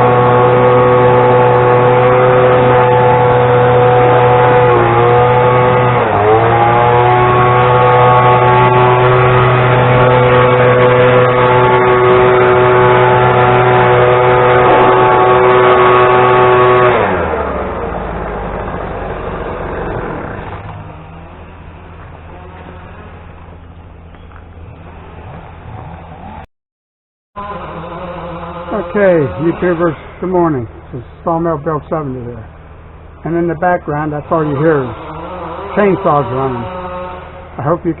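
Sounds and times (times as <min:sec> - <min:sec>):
engine running steadily: 0:00.0 - 0:26.5, 0:27.4 - 0:38.0
engine winding down: 0:00.0 - 0:26.5, 0:27.4 - 0:38.0.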